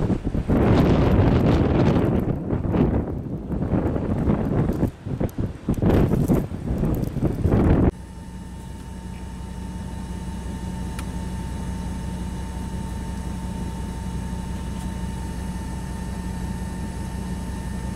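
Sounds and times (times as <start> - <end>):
vehicle engine humming: 5.6 - 17.9
thin steady whine: 6.2 - 17.9.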